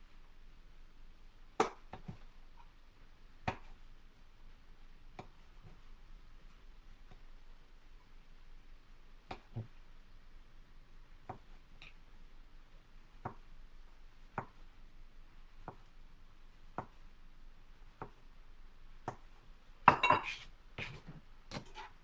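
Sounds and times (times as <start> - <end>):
knife slicing and tapping board: 19.0 - 19.3, 19.9 - 21.9
kitchenware clattering: 19.9 - 20.4.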